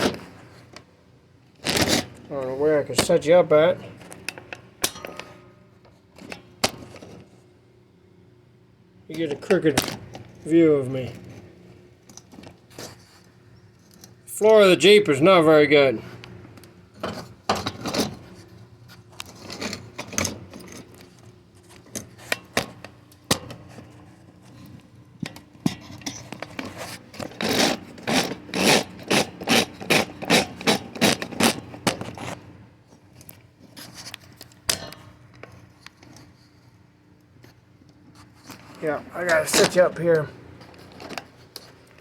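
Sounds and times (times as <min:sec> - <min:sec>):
phone handling rubbing and scraping: 0:12.2 - 0:14.0, 0:17.0 - 0:24.8, 0:25.6 - 0:34.7, 0:35.4 - 0:42.0.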